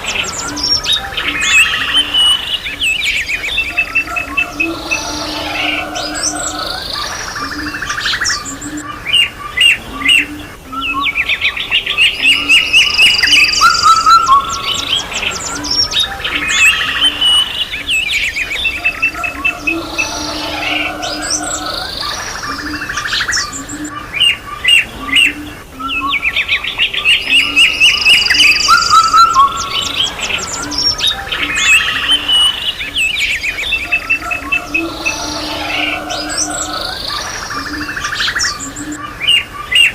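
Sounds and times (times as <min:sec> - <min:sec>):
songbirds singing: 0:00.0 - 0:39.9.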